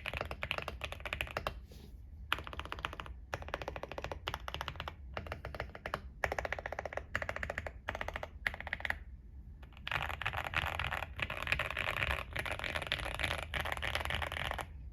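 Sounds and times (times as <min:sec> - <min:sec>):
typing on mechanical keyboard: 0:00.0 - 0:01.6, 0:02.3 - 0:09.0, 0:09.7 - 0:14.7.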